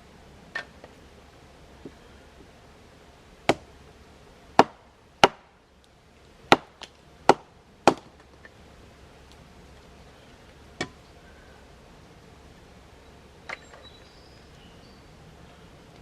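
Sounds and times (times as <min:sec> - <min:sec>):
blade chopping firewood: 0:03.4 - 0:03.7, 0:04.5 - 0:05.6, 0:06.4 - 0:08.6, 0:10.8 - 0:11.0.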